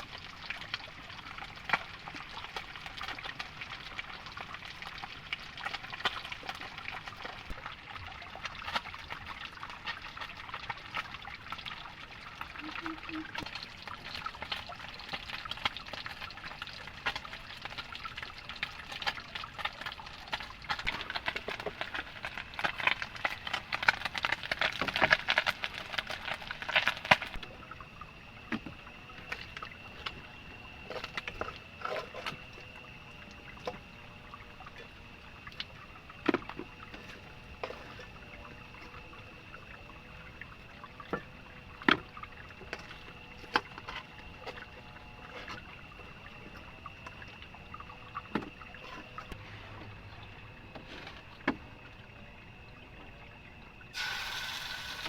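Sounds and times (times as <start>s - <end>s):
water trickling and splashing: 0.0s - 55.0s
steady high-pitched tone: 12.6s - 13.4s.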